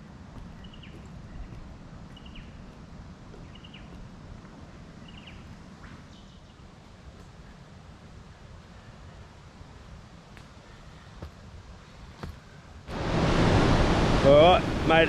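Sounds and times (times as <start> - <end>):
bird calling: 0.5 - 2.8, 3.4 - 4.1, 4.9 - 6.6
steady low rumble: 12.6 - 15.0.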